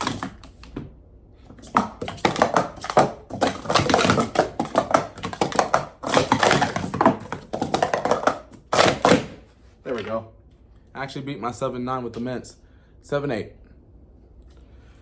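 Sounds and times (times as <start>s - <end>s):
plastic cups clattering: 0.0s - 0.8s, 1.5s - 10.2s.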